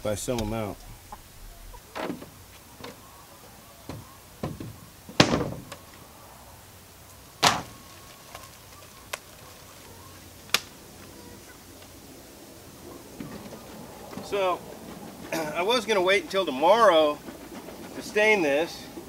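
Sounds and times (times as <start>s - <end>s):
knocks and thumps: 3.9s - 5.8s.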